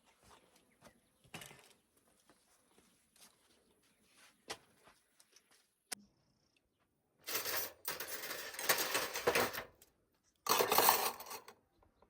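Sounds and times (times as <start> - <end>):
metal kitchenware clattering: 7.3 - 9.8, 10.5 - 11.5.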